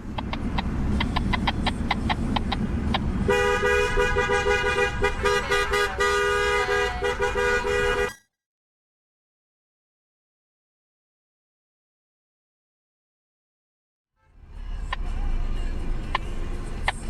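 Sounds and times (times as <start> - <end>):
low road rumble: 0.0 - 8.2, 14.2 - 17.0
two-tone vehicle horn: 3.2 - 8.2, 14.2 - 14.6
short horn toots: 3.3 - 8.2.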